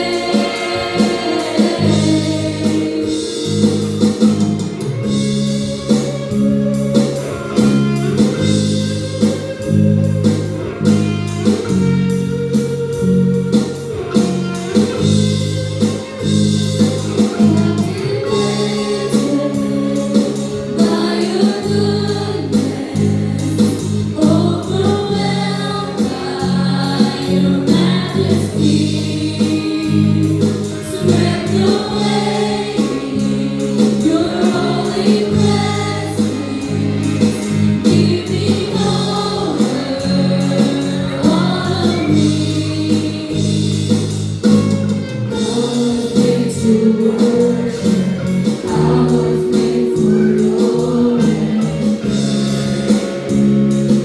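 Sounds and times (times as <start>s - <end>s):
group singing in unison: 0.0s - 5.1s, 17.1s - 44.2s, 45.3s - 53.3s
band with steady drum beat: 0.0s - 54.0s.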